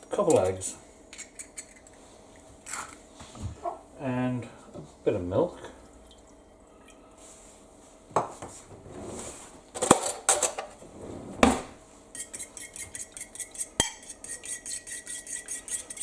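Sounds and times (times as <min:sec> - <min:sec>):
utensil beating eggs in a bowl: 0:12.1 - 0:16.0.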